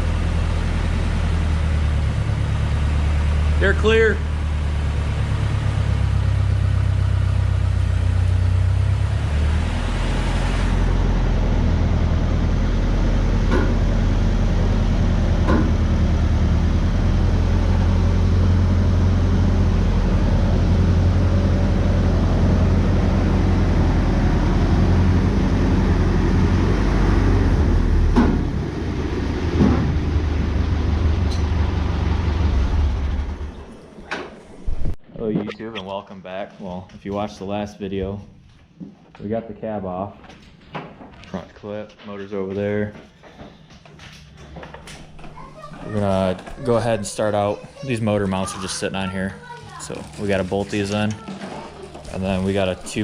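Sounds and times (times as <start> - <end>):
engine idling: 0.0 - 34.6.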